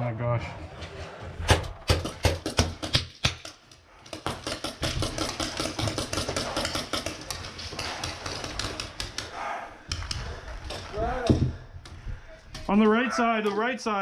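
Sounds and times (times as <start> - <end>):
paintball markers firing: 1.5 - 10.3.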